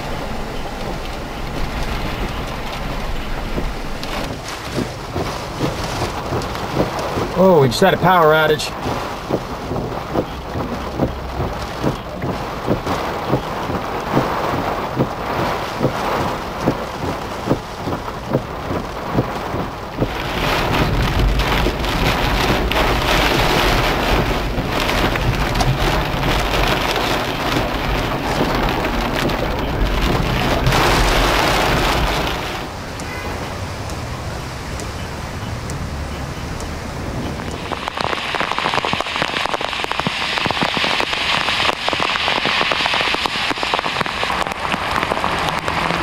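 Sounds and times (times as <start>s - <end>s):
deep low thunder rumble: 0.0s - 8.1s, 8.7s - 34.6s
tapping of raindrops: 0.0s - 33.2s, 33.8s - 46.0s
heavy rain: 0.0s - 46.0s.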